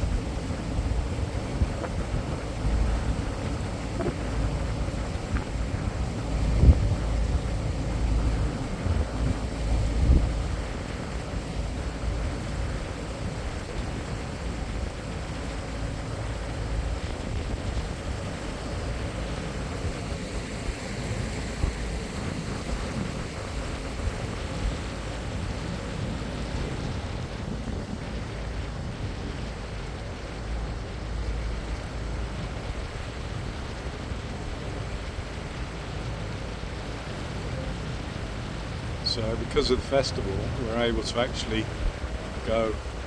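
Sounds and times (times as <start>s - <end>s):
boat motor running: 0.0s - 43.0s
water rushing past: 0.0s - 43.0s
wind buffeting microphone: 0.0s - 43.0s.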